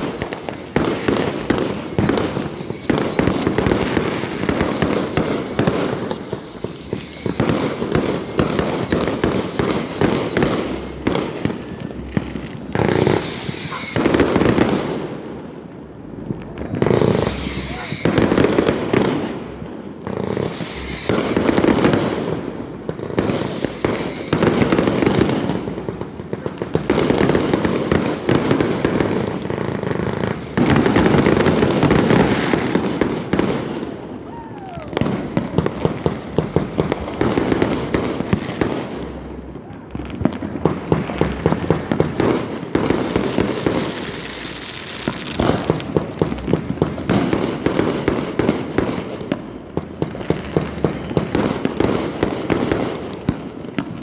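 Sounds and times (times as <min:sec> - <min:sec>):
falling firework whistles: 0:00.0 - 0:14.9, 0:16.8 - 0:26.0, 0:27.0 - 0:39.3, 0:40.0 - 0:46.4
fireworks bangs: 0:00.0 - 0:54.0
fireworks crackling pops: 0:00.0 - 0:54.0.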